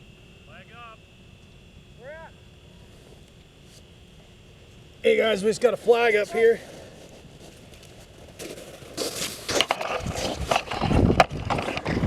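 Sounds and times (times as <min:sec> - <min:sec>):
footsteps crunching on snowy ice: 0:02.8 - 0:12.0
wind rumbling on microphone: 0:09.8 - 0:12.0.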